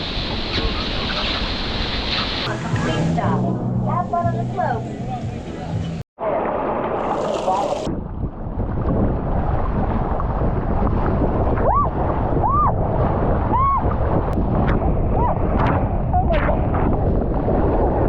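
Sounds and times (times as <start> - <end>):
wind buffeting microphone: 7.1 - 18.0.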